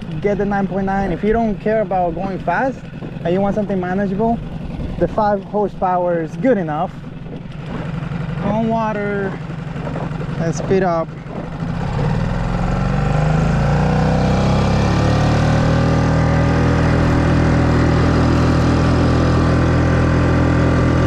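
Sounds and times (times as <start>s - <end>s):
outboard motor throttling up: 0.0s - 21.0s.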